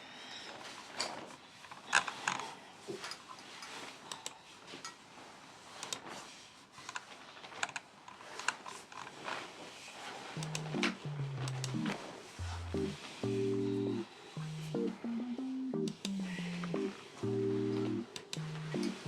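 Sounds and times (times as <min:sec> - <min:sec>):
mechanical keyboard typing: 0:10.4 - 0:12.0, 0:15.8 - 0:16.2.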